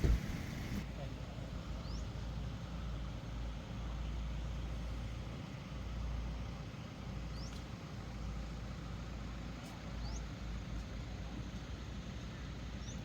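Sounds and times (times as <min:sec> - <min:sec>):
car rumbling on road: 0:00.0 - 0:00.8.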